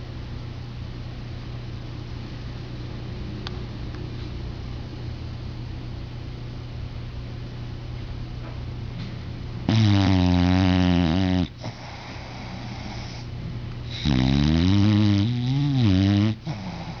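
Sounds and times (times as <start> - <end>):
dog snoring: 9.6 - 17.0.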